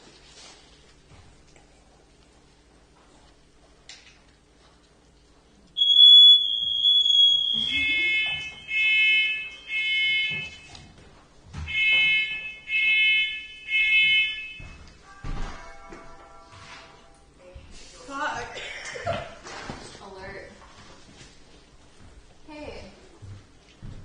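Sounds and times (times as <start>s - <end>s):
smoke alarm beeping: 5.7s - 10.9s, 11.6s - 16.7s.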